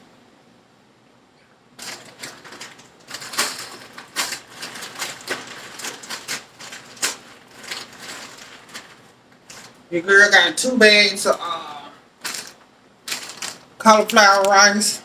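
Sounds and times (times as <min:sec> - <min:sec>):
objects clicking and knocking: 0:01.8 - 0:09.9, 0:12.2 - 0:14.6.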